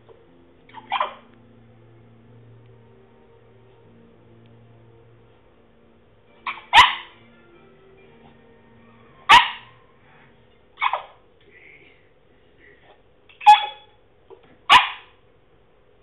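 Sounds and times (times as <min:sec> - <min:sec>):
dog barking: 0:00.7 - 0:01.2, 0:06.5 - 0:07.2, 0:09.2 - 0:09.8, 0:10.8 - 0:11.2, 0:13.4 - 0:13.9, 0:14.7 - 0:15.2
dog yipping: 0:00.7 - 0:01.2, 0:06.4 - 0:07.2, 0:09.2 - 0:09.8, 0:10.8 - 0:11.2, 0:13.3 - 0:14.0, 0:14.7 - 0:15.2.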